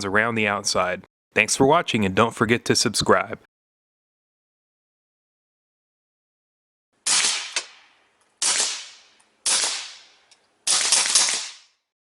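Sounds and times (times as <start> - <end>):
sharp bangs: 7.0 - 11.8.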